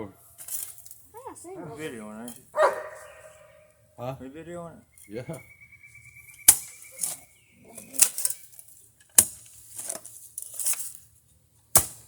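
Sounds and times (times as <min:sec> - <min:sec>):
gritty scrape in dirt: 0:00.2 - 0:03.5, 0:06.2 - 0:12.0
digging tool hitting dirt: 0:06.4 - 0:11.0, 0:11.7 - 0:12.0.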